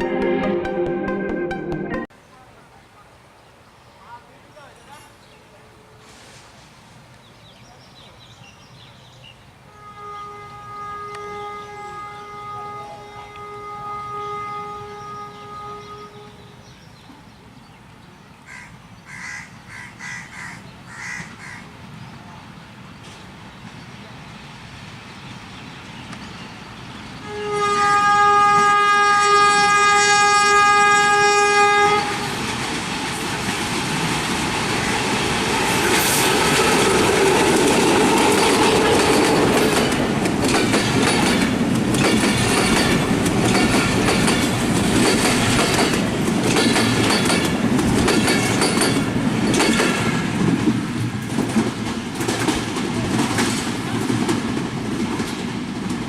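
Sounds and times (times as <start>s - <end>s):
locomotive horn blast: 9.7s - 16.6s, 27.2s - 32.4s
train rumble: 19.7s - 56.0s
wheels clattering over rail joints: 35.7s - 56.0s.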